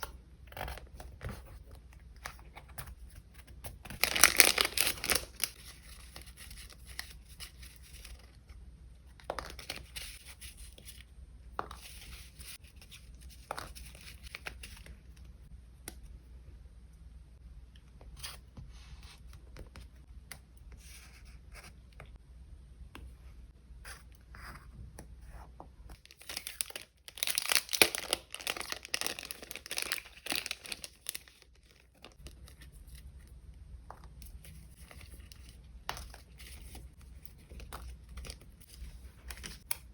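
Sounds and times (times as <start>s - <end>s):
paper rustling and crinkling: 1.1s - 8.4s, 25.9s - 33.1s.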